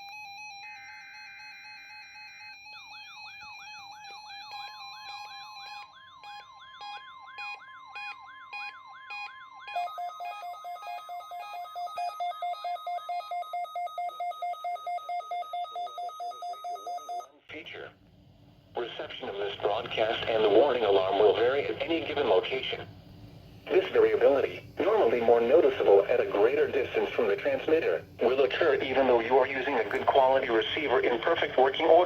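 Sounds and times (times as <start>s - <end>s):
sweeping receiver siren: 0.0s - 17.2s
steady warning alarm tone: 0.0s - 17.4s, 18.1s - 32.0s
fast pulsing electronic beep: 2.2s - 17.2s, 23.7s - 32.0s
data burst buzzing: 18.8s - 32.0s.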